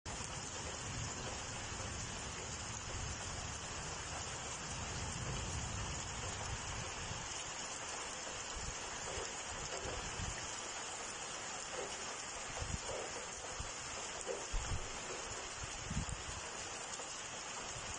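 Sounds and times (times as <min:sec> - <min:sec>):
wind buffeting microphone: 0:12.5 - 0:13.0, 0:14.5 - 0:16.5.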